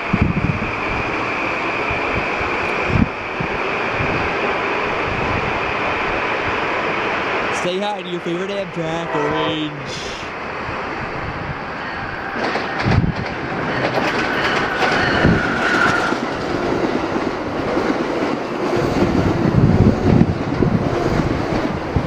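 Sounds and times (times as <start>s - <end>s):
train wheels clacking over rail joints: 12.3s - 19.1s.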